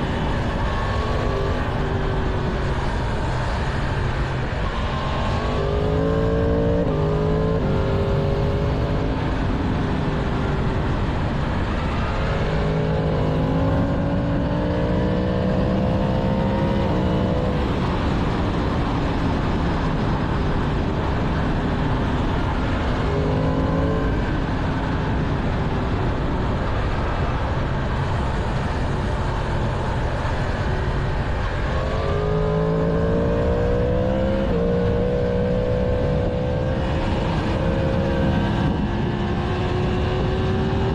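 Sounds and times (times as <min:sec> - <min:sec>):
motorcycle engine accelerating: 0:00.0 - 0:40.9
wind noise: 0:00.0 - 0:40.9.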